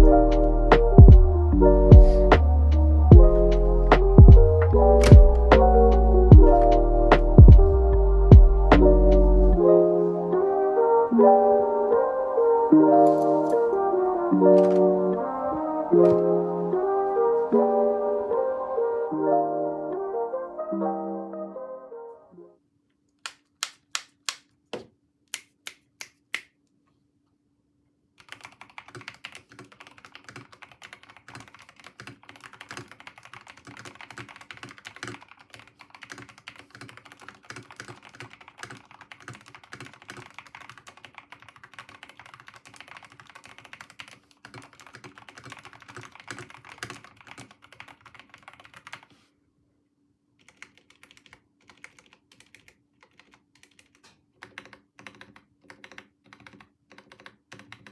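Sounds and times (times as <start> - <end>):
mechanical keyboard typing: 14.5 - 14.9, 28.2 - 49.1, 50.4 - 57.9.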